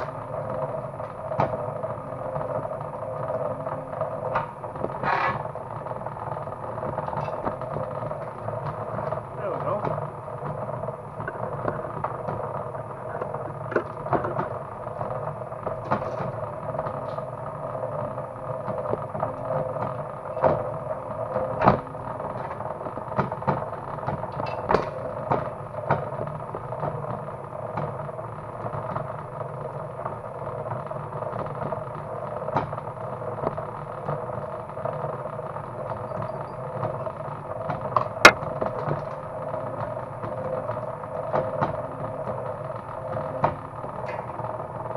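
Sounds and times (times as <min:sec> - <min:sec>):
machine motor humming: 0:00.0 - 0:24.2.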